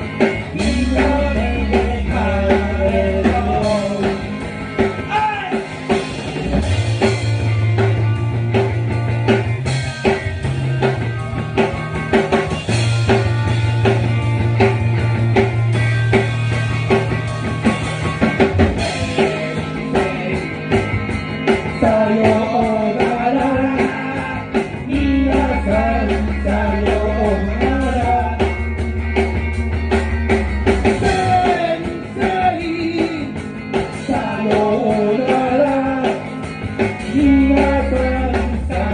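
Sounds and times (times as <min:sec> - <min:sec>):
bass guitar: 0:00.0 - 0:38.9
drum kit beat: 0:00.0 - 0:38.9
electric guitar: 0:00.0 - 0:38.9
person singing: 0:00.4 - 0:04.4, 0:18.8 - 0:20.9, 0:21.5 - 0:28.6, 0:30.9 - 0:36.4, 0:37.0 - 0:38.9.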